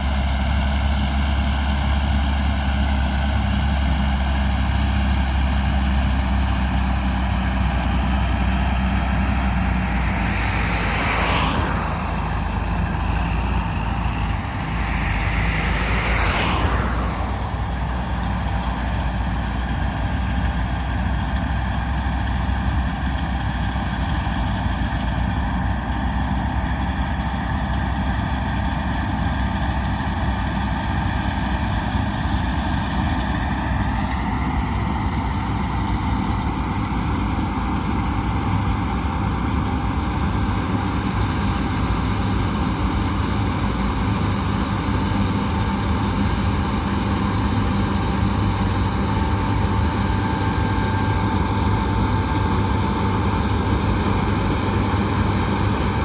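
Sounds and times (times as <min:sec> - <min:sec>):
diesel engine running under load: 0:00.0 - 0:56.0
rushes of noise: 0:06.6 - 0:18.9.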